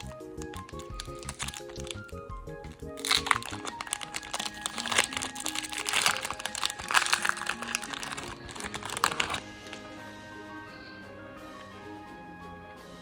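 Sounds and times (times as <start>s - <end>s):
foil wrapper crinkling: 0.0s - 9.9s
background music with simple melody: 0.0s - 13.0s.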